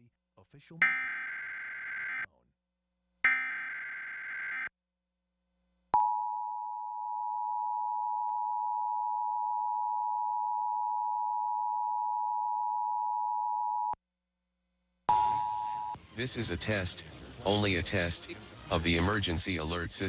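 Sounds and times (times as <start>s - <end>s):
data burst: 0.8s - 2.3s
two-tone attention signal: 0.8s - 2.3s, 15.1s - 16.0s.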